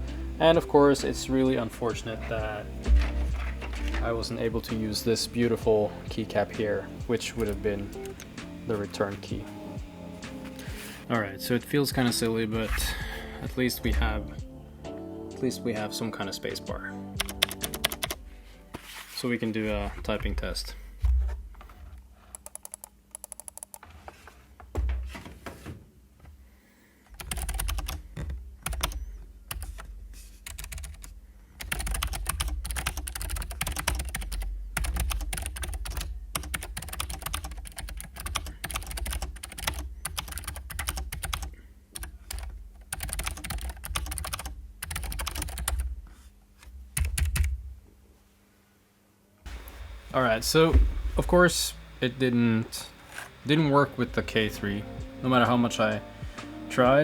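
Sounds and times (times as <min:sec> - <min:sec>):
mechanical keyboard typing: 0:17.2 - 0:18.2, 0:22.3 - 0:23.8, 0:27.2 - 0:28.0, 0:28.6 - 0:45.9, 0:47.0 - 0:47.5.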